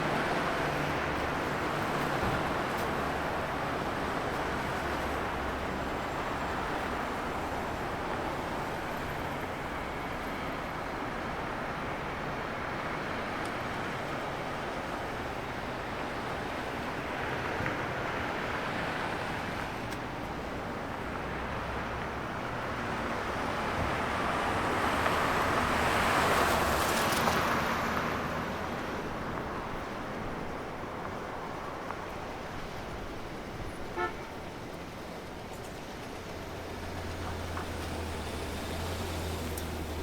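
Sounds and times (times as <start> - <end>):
cars passing by: 0.0 - 40.0
car horn toot: 33.9 - 34.4.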